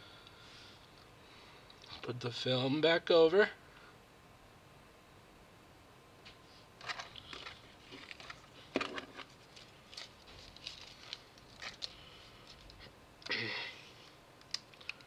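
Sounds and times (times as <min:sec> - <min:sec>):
plastic film rustling and tapping: 0:06.8 - 0:12.8.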